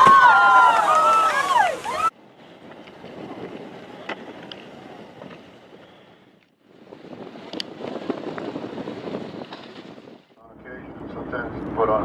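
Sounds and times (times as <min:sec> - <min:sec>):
water splashing around boat: 0:00.0 - 0:04.1
wind buffeting microphone: 0:00.8 - 0:12.0.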